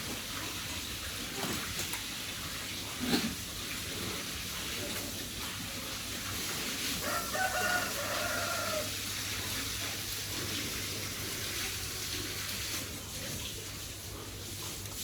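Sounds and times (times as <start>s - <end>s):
rooster crowing: 7.0s - 9.0s.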